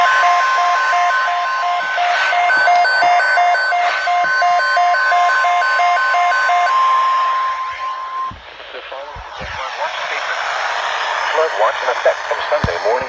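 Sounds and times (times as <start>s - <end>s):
rapid two-pitch beeping: 0.0s - 8.5s
steady alarm tone: 0.0s - 9.6s
radio static: 0.0s - 13.0s.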